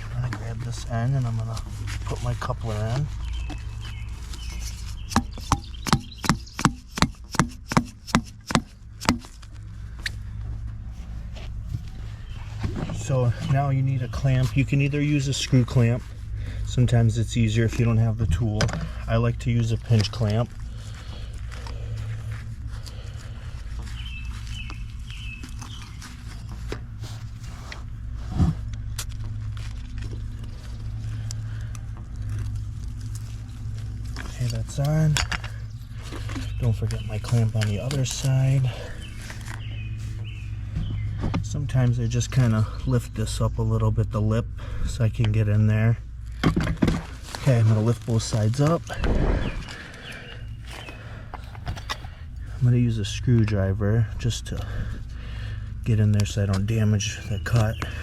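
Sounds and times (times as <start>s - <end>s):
hands clicking and scraping pipe: 4.3s - 10.2s
low rumble: 8.8s - 46.4s, 47.0s - 55.9s.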